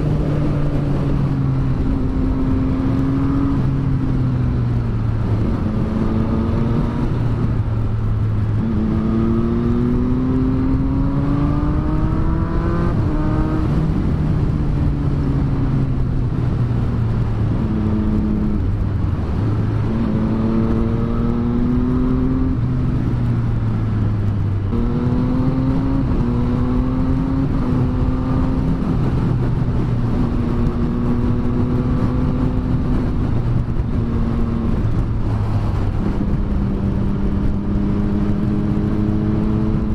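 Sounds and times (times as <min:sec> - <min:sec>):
motorcycle engine accelerating: 0:00.0 - 0:39.9
wind rush: 0:00.0 - 0:39.9.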